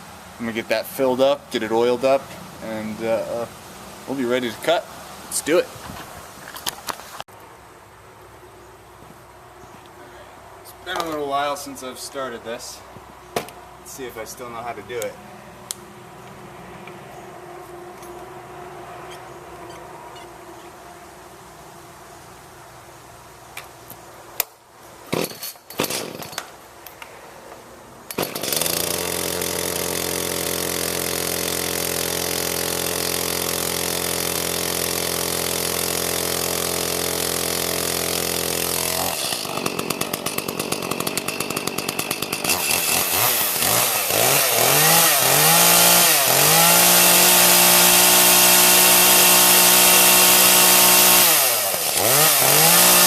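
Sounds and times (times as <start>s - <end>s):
chainsaw starter pulls: 25.2s - 26.4s, 28.1s - 53.0s
chainsaw engine revving: 28.1s - 53.0s.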